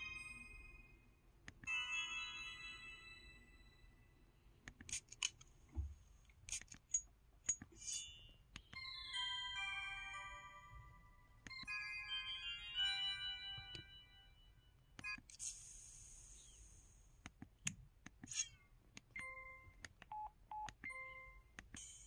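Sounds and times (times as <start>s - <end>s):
chiming electronic melody: 0.0s - 4.3s, 8.0s - 15.3s, 19.2s - 19.8s, 20.8s - 22.0s.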